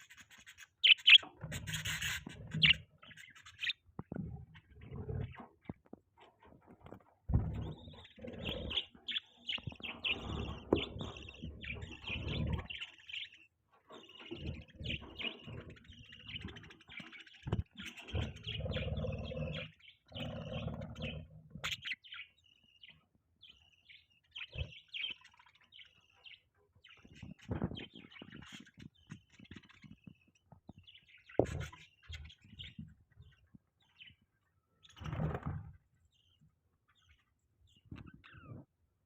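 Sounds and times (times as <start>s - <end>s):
budgerigars chirping: 0.0s - 3.8s, 6.8s - 30.0s.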